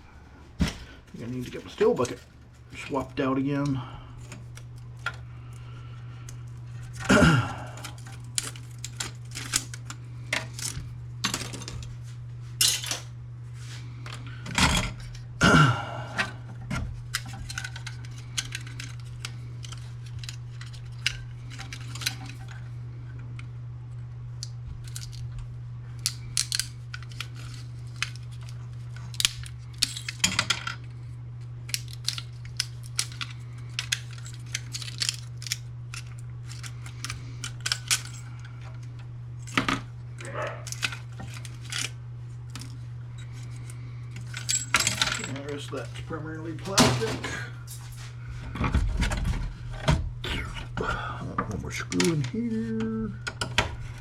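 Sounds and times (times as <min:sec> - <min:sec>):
steady low hum: 0:00.0 - 0:54.0
printer parts clattering and clicking: 0:44.2 - 0:45.8, 0:46.5 - 0:47.5.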